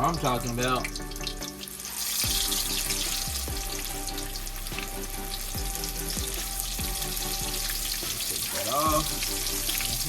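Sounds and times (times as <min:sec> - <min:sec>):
deep-frying hissing sizzle: 0:00.0 - 0:10.0.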